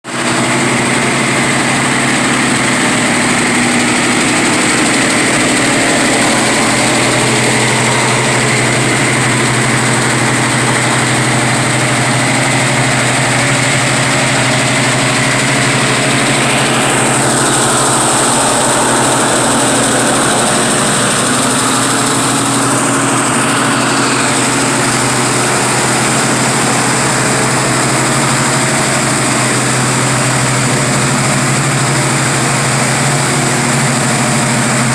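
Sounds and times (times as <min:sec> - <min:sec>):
car engine idling: 0:00.1 - 0:34.9
high whine: 0:00.2 - 0:34.9.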